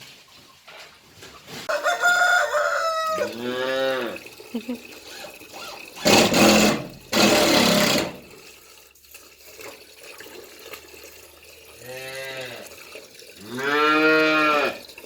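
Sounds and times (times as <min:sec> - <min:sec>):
cattle mooing: 0:03.2 - 0:04.2, 0:13.4 - 0:14.8.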